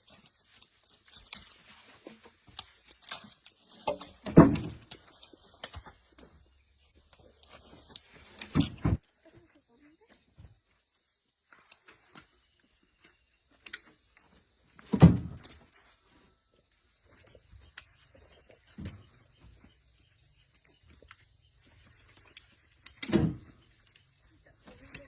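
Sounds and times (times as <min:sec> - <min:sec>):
objects being handled clicking: 0:13.6 - 0:14.3, 0:20.4 - 0:23.2.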